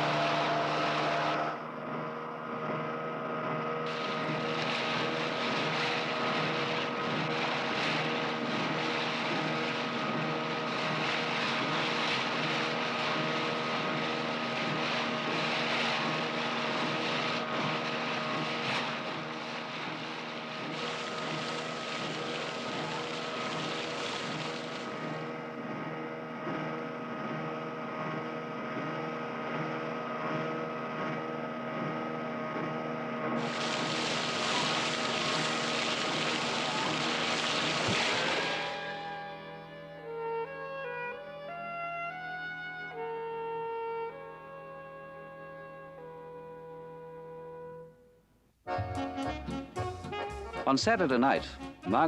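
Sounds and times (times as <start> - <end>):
engine running: 0.0 - 52.0
rushing noise: 33.4 - 39.6.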